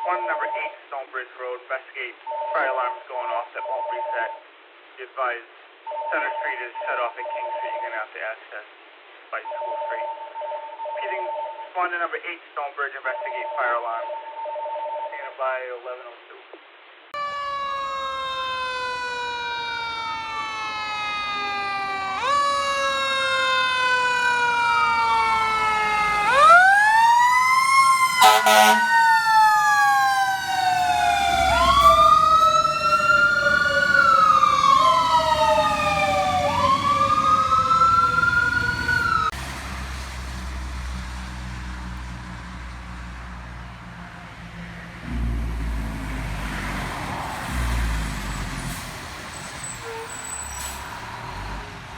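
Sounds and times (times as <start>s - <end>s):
fire truck sirens wailing: 17.2s - 51.9s
heavy truck engine rumbling: 17.2s - 51.9s
horn blast: 28.2s - 29.2s.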